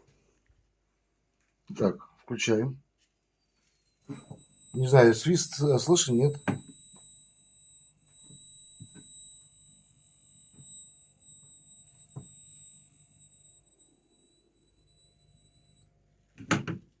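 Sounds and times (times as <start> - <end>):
television high-pitched whistle: 3.3 - 15.8.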